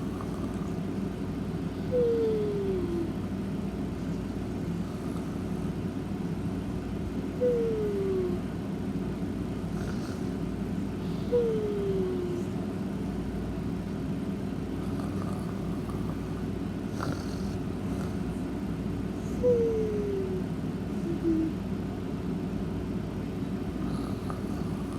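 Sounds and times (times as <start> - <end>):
pet snoring: 0.0 - 1.0, 4.6 - 5.8, 9.6 - 12.3, 14.8 - 18.4, 23.8 - 24.9.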